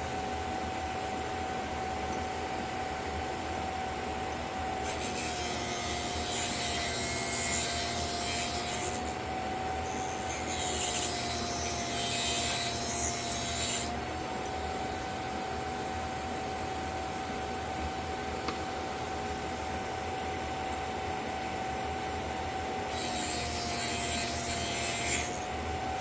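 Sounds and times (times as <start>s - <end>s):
sharpener motor whine: 3.4s - 14.6s, 22.8s - 26.0s
drill bit grinding on wheel: 4.2s - 9.2s, 9.8s - 14.0s, 22.9s - 26.0s.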